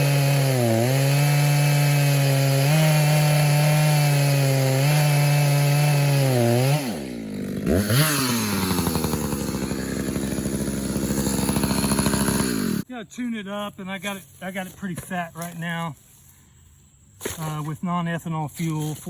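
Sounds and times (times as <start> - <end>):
chainsaw running and revving: 0.0 - 12.9
person speaking: 12.8 - 16.0, 17.2 - 19.0.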